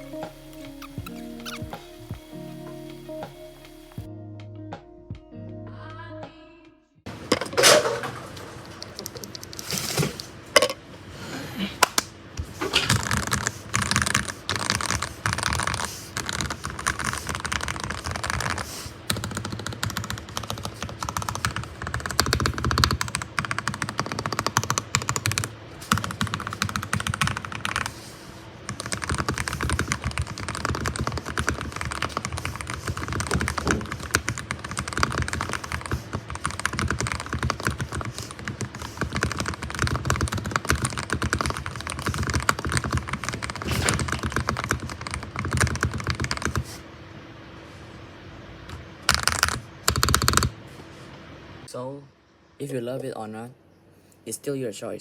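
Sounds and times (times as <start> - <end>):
mechanical keyboard typing: 12.8 - 27.9, 28.7 - 46.7, 49.1 - 50.5.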